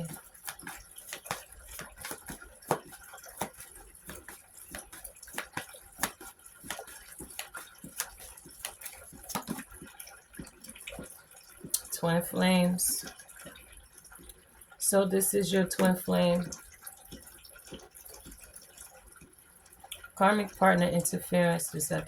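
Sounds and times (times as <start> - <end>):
cards clicking on a table: 0.1 - 9.7.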